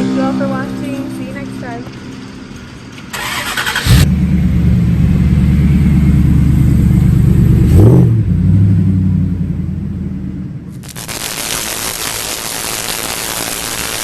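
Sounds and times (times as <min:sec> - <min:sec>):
engine starting and idling: 0:02.1 - 0:07.8
engine revving: 0:02.2 - 0:14.0.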